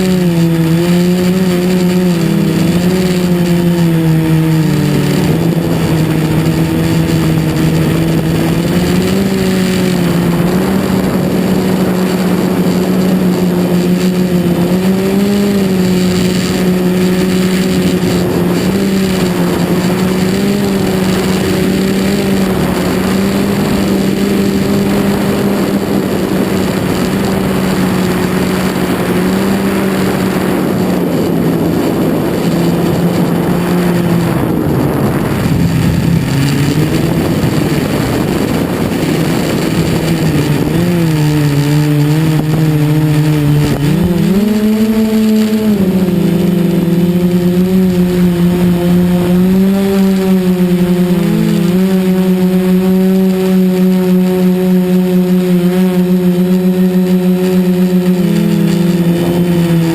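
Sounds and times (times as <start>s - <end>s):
drone motors whining: 0.0s - 59.9s
air rushing: 29.9s - 44.5s.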